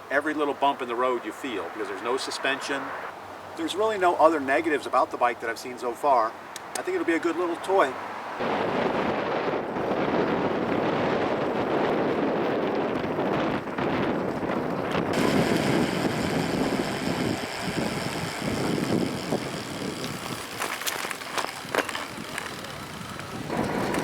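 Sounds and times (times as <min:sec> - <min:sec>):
wind buffeting microphone: 0:08.4 - 0:24.0.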